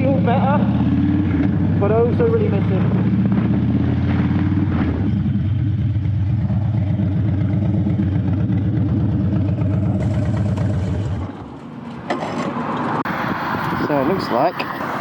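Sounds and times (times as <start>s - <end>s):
motorcycle engine running: 0.0s - 11.7s.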